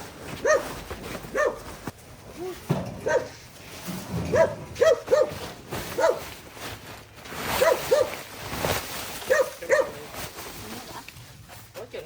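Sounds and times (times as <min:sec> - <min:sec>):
dog barking: 0:00.4 - 0:00.7, 0:01.3 - 0:01.6, 0:03.0 - 0:03.4, 0:04.3 - 0:05.4, 0:06.0 - 0:06.2, 0:07.6 - 0:08.2, 0:09.3 - 0:10.0.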